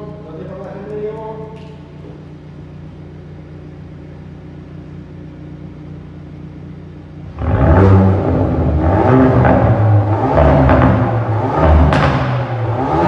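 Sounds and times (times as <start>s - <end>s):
car engine revving: 5.3s - 13.0s.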